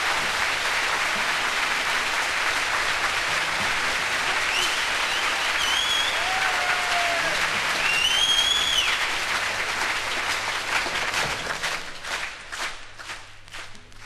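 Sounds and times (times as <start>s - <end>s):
audience applauding: 0.0s - 14.0s
gliding whistles: 4.5s - 6.3s, 7.8s - 9.0s.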